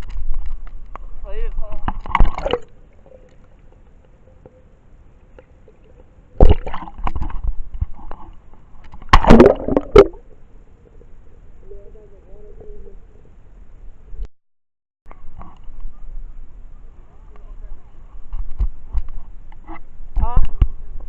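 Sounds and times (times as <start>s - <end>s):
water splashing and sloshing: 1.6s - 3.6s, 5.7s - 10.3s.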